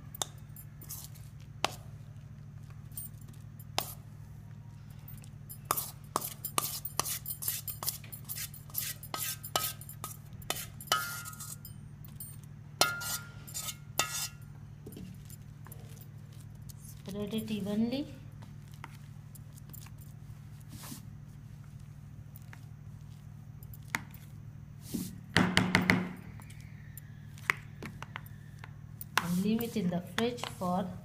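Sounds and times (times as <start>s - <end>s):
low steady hum: 0.0s - 31.0s
utensil scraping against bowl: 0.8s - 1.8s, 5.7s - 11.6s, 12.8s - 14.4s, 29.2s - 30.9s.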